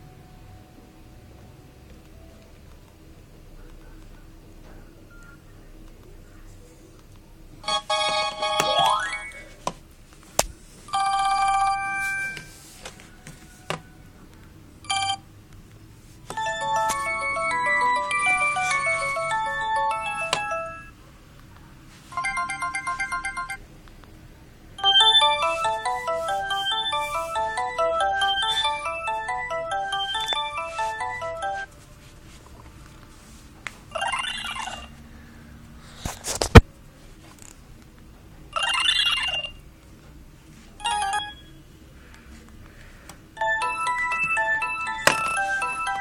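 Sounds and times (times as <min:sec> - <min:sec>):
polyphonic phone ringtones: 0:07.6 - 0:09.5, 0:10.9 - 0:12.6, 0:14.8 - 0:15.3, 0:16.3 - 0:21.0, 0:22.1 - 0:23.6, 0:24.8 - 0:31.7, 0:38.6 - 0:39.6, 0:40.8 - 0:41.7, 0:43.4 - 0:46.0.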